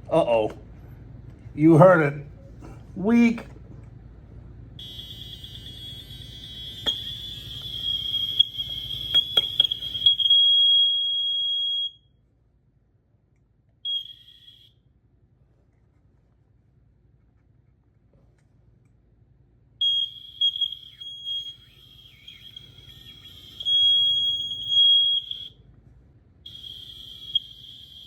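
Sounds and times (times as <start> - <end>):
short alarm beep: 4.8 - 12.0, 13.9 - 14.7, 19.8 - 25.5, 26.5 - 28.0
smoke alarm high-pitched tone: 4.8 - 12.0, 13.9 - 14.7, 19.8 - 25.6, 26.4 - 28.0.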